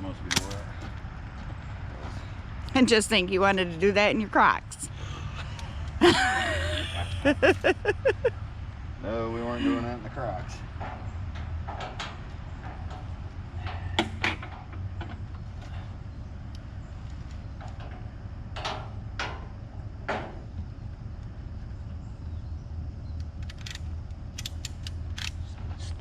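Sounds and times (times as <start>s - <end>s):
low engine hum: 0.0s - 26.0s
knocks and clunks on trailer: 10.6s - 22.6s.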